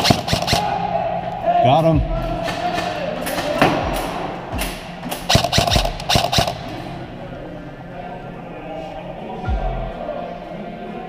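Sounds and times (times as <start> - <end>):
airsoft guns firing: 0.0 - 0.8, 2.7 - 6.8
background music: 0.0 - 11.0.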